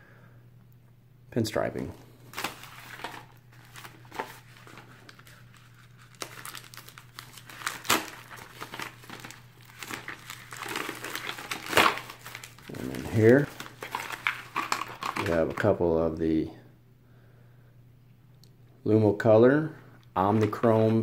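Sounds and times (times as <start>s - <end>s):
packaging crinkling: 2.3s - 15.7s.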